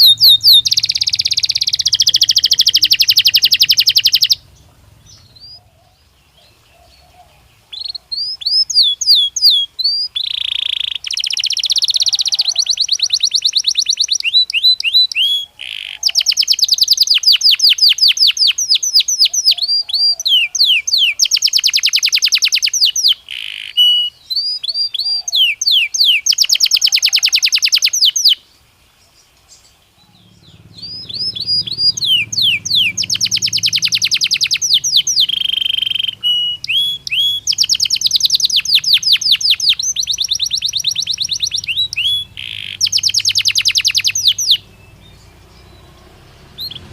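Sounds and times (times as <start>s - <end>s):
canary singing: 0.0s - 28.6s, 29.4s - 46.9s
faint low rumble: 3.8s - 8.1s, 29.7s - 38.4s.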